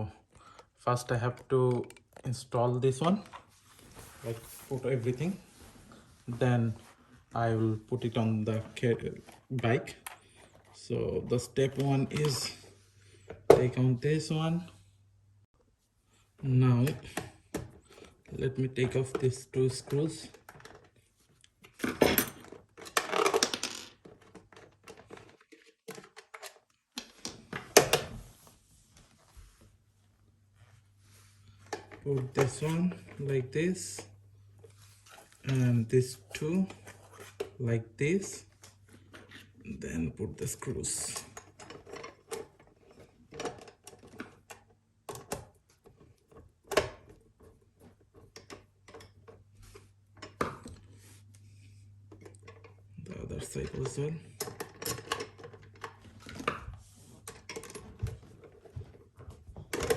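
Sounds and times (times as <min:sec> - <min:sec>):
metal parts clicking and clattering: 0:53.4 - 0:56.6.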